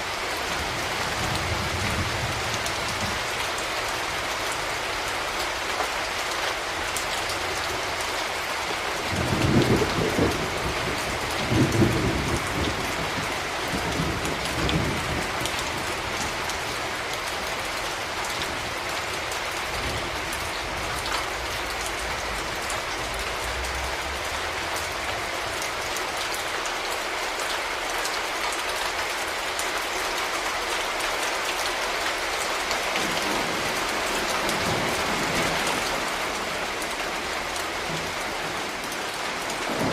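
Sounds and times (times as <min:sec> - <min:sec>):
steady rain: 0:00.0 - 0:39.9
thunder rumbling: 0:09.1 - 0:16.0.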